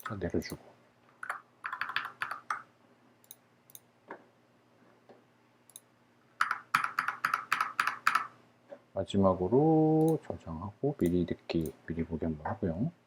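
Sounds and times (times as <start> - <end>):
computer mouse and keyboard clicking: 1.2 - 2.7, 6.4 - 8.3.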